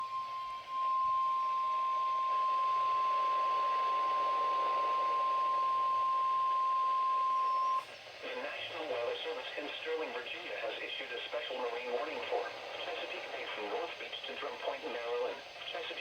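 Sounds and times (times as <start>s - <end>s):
faint radio hiss: 7.8s - 16.0s.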